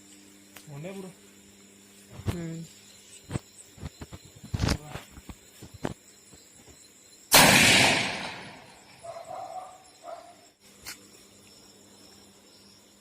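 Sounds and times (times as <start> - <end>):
gunshot: 7.3 - 8.8
dog barking: 9.0 - 10.4.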